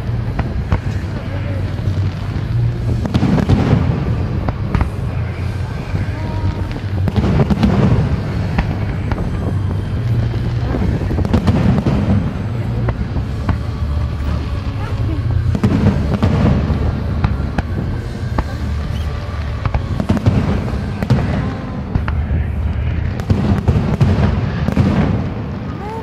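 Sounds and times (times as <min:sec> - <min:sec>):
fireworks bangs: 0:00.0 - 0:26.0
fireworks bursting and crackling: 0:00.0 - 0:26.0
low rumble: 0:00.0 - 0:26.0.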